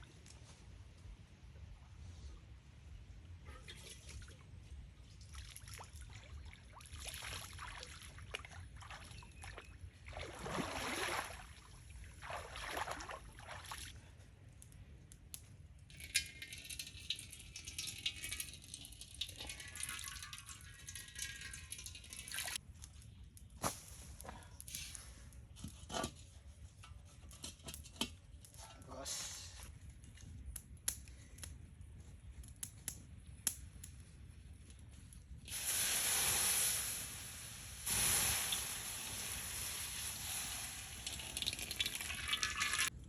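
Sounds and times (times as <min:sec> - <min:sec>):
water pouring and sloshing: 0:03.3 - 0:14.4, 0:15.9 - 0:22.6, 0:35.5 - 0:43.0.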